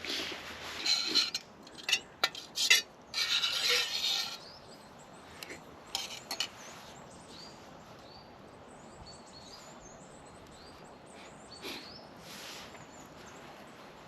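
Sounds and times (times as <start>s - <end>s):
small birds chirping: 3.0s - 14.0s.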